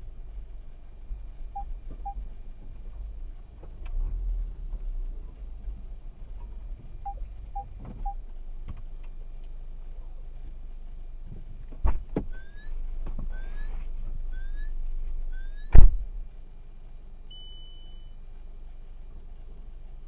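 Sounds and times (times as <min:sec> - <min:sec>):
short rising chirps: 0:12.3 - 0:15.8
short beep: 0:12.3 - 0:15.9, 0:17.3 - 0:18.2
car door slamming: 0:15.7 - 0:16.0
car door thump: 0:15.7 - 0:16.0.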